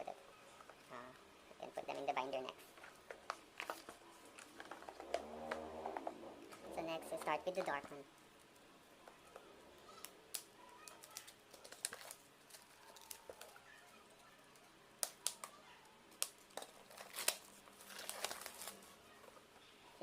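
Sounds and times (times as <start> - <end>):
plastic wrapping crinkling: 2.0 - 19.6
sharp clicks and rustles: 2.6 - 19.7.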